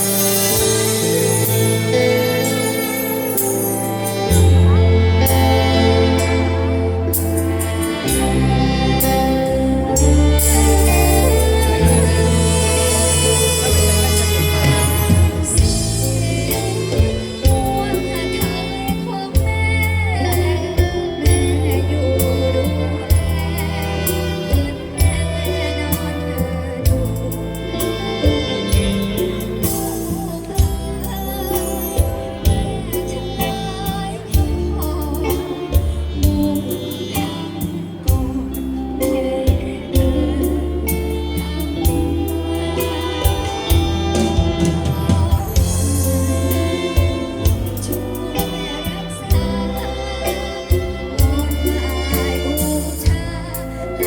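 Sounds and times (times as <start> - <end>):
steady bass: 0.0 - 54.0
song with singing and drum beat: 24.2 - 54.0.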